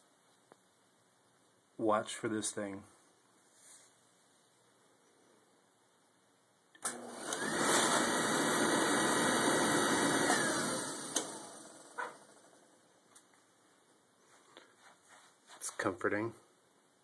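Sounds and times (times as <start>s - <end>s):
furnace burner rushing: 6.8s - 12.8s
burner ignition click: 11.1s - 11.4s.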